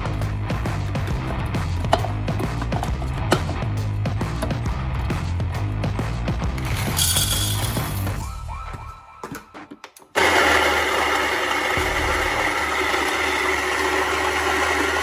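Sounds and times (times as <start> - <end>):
coffee grinder motor running: 6.6 - 8.0, 10.2 - 15.0.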